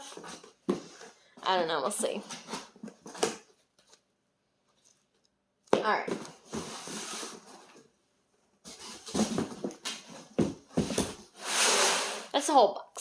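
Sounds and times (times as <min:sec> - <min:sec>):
knocks and scrapes in box: 0:08.7 - 0:12.2.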